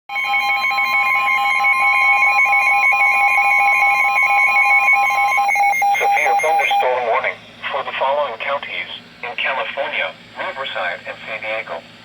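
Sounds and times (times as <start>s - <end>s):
steady alarm tone: 0.1s - 8.2s
buzzing radio interference: 5.9s - 11.9s.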